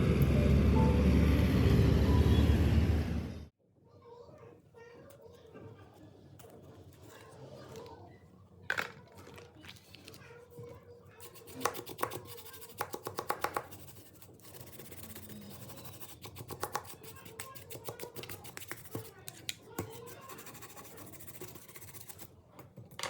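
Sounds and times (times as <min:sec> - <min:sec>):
small tools clicking and scratching: 0:11.2 - 0:23.0.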